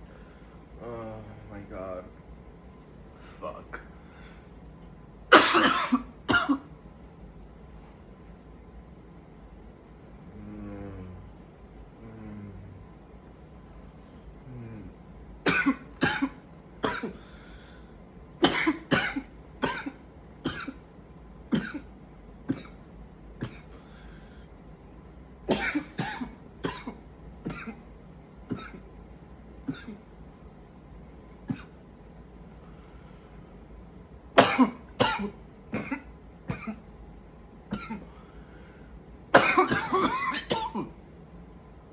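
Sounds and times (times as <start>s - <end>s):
man coughing: 5.3s - 6.7s, 15.5s - 17.2s, 18.4s - 20.8s, 21.5s - 21.9s, 22.5s - 22.8s, 23.4s - 23.8s, 25.5s - 27.8s, 28.5s - 28.9s, 29.7s - 30.1s, 31.5s - 31.8s, 34.4s - 36.8s, 37.7s - 38.2s, 39.3s - 41.0s.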